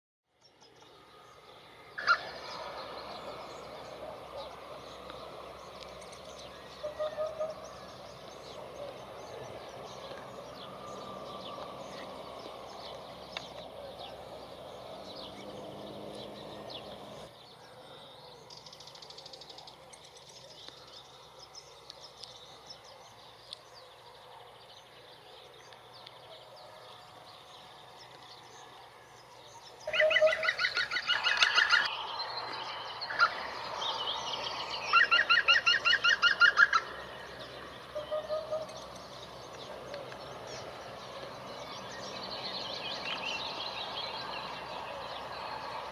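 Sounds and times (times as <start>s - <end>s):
faint bird calls: 2.0s - 12.1s, 29.8s - 32.0s, 32.9s - 41.4s.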